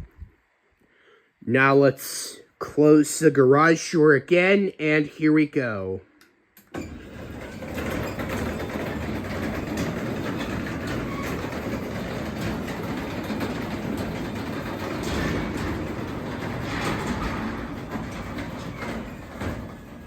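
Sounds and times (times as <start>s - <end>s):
garage door opener running: 6.6s - 20.0s.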